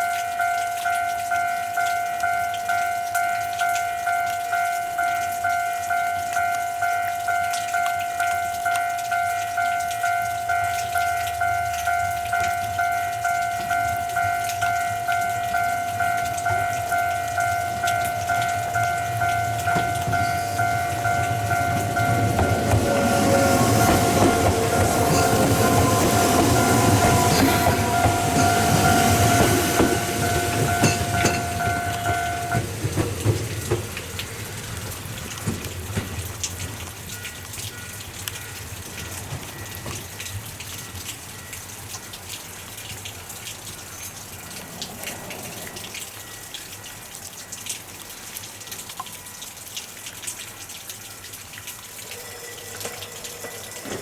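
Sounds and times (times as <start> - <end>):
crossing alarm ringing: 0.0 - 42.6, 51.1 - 54.0
train wheels clattering over rail joints: 17.6 - 37.1, 52.8 - 54.0.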